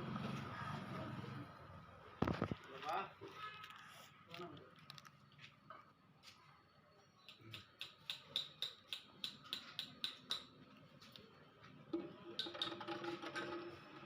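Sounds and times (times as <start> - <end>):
metallic clicking of hand tools: 7.3 - 10.5.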